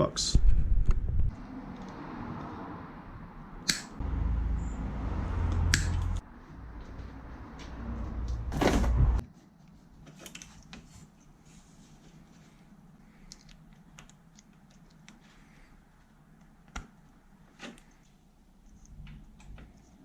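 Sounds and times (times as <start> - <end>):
hands clicking wiring connectors: 3.6 - 4.0, 5.5 - 6.2, 13.2 - 15.2.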